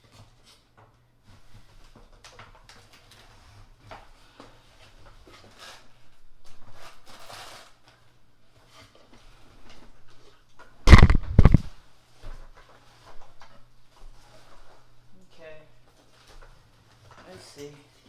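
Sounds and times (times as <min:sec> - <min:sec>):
packaging rustling: 0:10.9 - 0:11.7.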